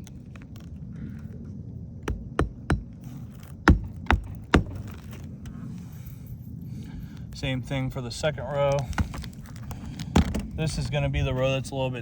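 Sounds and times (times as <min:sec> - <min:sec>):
hammer driving roofing nails: 0:02.0 - 0:05.2, 0:08.8 - 0:10.6.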